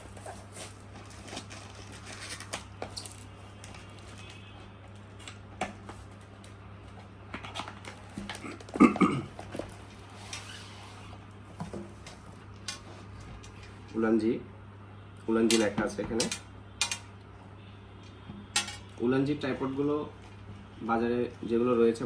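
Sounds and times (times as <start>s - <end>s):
packaging rustling: 0.0s - 11.1s.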